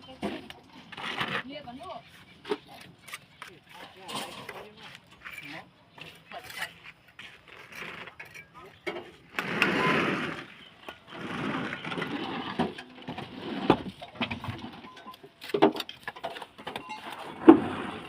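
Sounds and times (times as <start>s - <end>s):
trowel scraping mortar: 6.2s - 15.6s.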